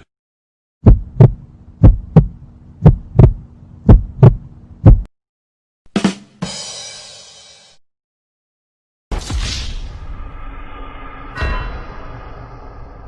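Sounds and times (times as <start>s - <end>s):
heartbeat thumps: 0.8s - 5.1s
short hit with bright tone: 9.1s - 13.0s.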